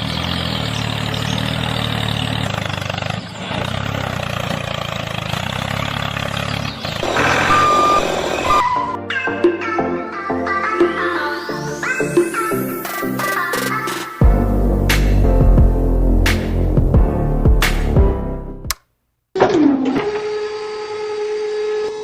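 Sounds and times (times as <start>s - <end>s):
vehicle engine humming: 0.0s - 8.8s, 13.6s - 18.7s
short steady beep: 7.2s - 9.0s
music: 8.6s - 18.7s.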